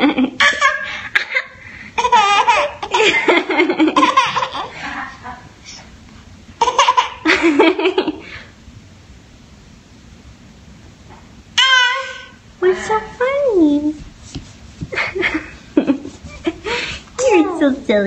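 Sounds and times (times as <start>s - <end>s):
baby laughing: 0.0s - 5.2s, 6.6s - 8.1s, 11.6s - 12.4s.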